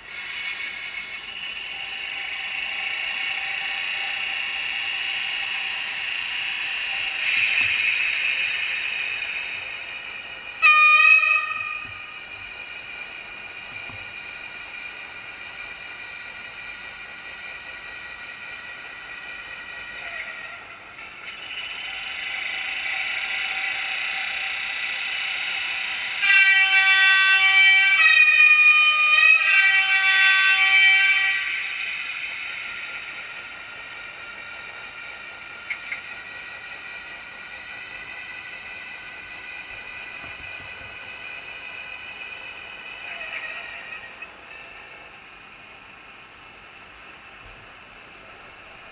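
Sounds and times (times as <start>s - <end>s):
air hiss: 0.0s - 20.2s, 29.6s - 43.5s
loud train horn: 10.6s - 12.2s, 25.9s - 31.9s.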